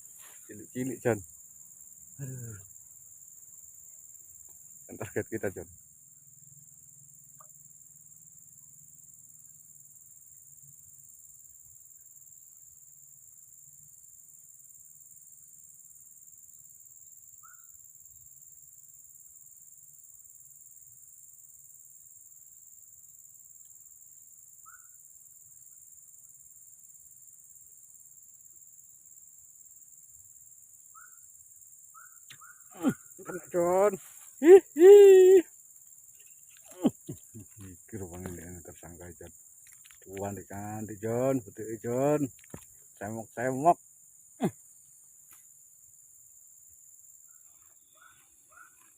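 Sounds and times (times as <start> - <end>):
faint chirps: 0.0 - 18.8, 23.5 - 25.9, 30.2 - 45.6, 47.0 - 48.9
insects chorus shrilling: 0.0 - 48.9.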